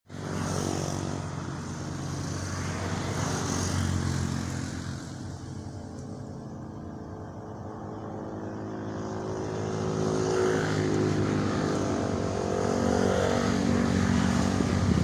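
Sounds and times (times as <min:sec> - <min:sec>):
motor engine running: 0:11.0 - 0:15.0.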